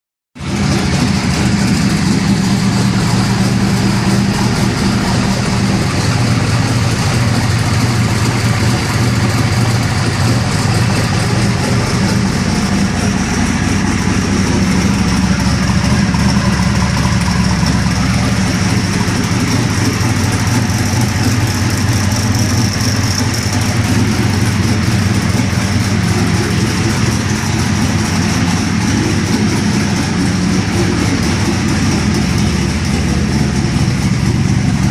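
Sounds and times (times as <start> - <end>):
car engine idling: 0.4 - 34.9.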